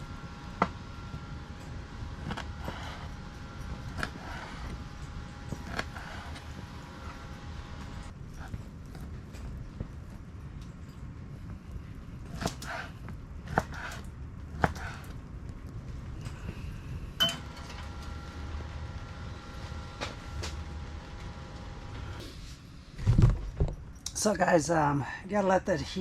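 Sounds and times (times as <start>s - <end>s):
metal clank with ringing tone: 17.2s - 17.6s.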